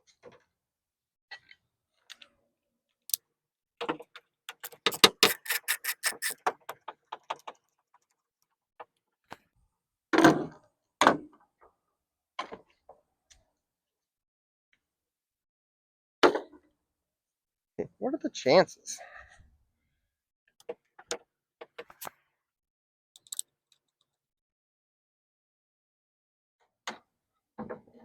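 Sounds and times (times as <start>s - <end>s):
quick sharp clicks: 4.5s - 6.4s.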